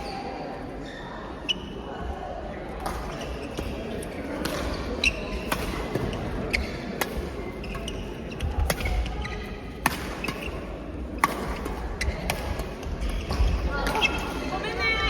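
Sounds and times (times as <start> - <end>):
shoe squeaks: 0.0 - 1.8, 4.7 - 6.9, 7.6 - 9.6, 13.0 - 14.6
racket hits: 4.4 - 7.4, 8.3 - 14.1.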